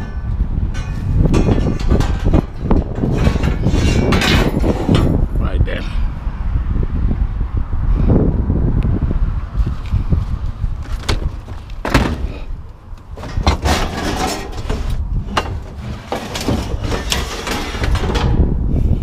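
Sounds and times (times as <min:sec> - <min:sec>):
scrap metal clanking and scraping: 0:00.0 - 0:05.4, 0:10.9 - 0:19.0.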